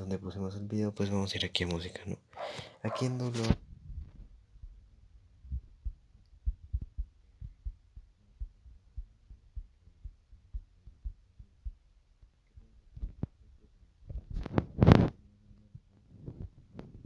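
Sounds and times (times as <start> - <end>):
faint background noise: 0.0 - 17.0
soft dull low thumps: 3.5 - 13.5.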